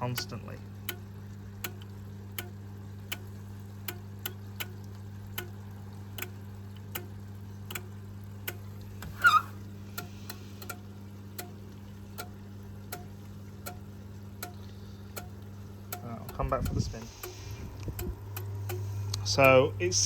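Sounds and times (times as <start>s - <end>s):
drain pump hum: 0.0s - 20.0s
washing machine timer ticking: 0.0s - 20.0s
pitched squeak: 9.0s - 9.6s.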